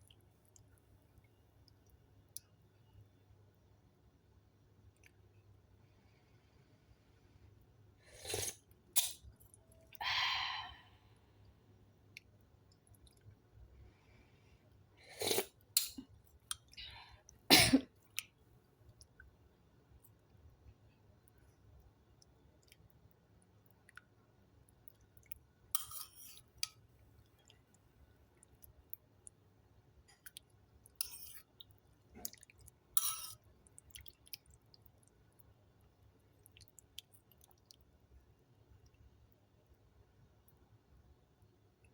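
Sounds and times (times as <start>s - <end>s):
person slurping soup: 8.1s - 9.2s, 15.1s - 15.9s, 31.0s - 31.6s, 33.0s - 33.4s.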